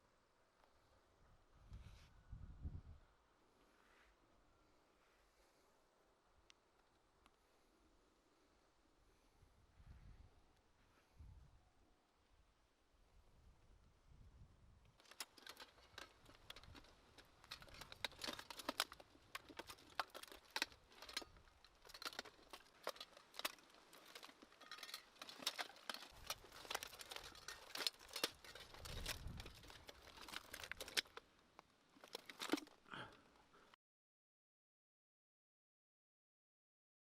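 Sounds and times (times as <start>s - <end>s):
small hard objects clicking: 15.0s - 32.9s.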